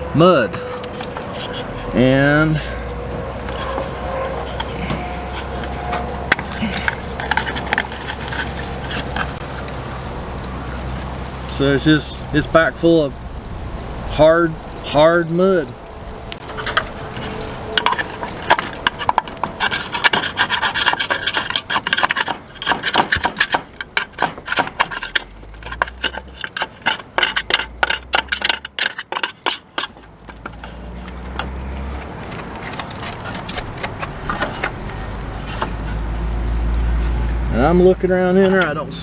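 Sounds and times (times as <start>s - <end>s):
scraping and chipping dried mud: 0.6s - 10.0s, 16.4s - 39.0s.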